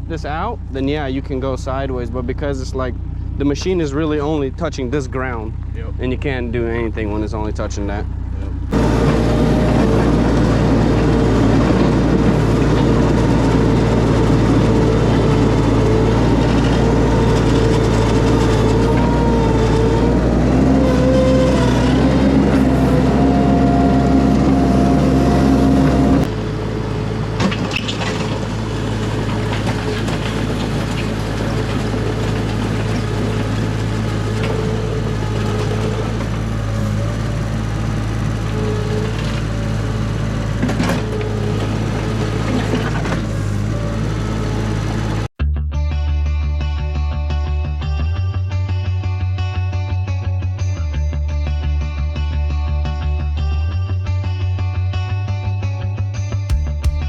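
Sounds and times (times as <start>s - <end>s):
skid steer engine running: 0.0s - 46.0s, 46.6s - 57.0s
hydraulic whine: 7.9s - 45.3s.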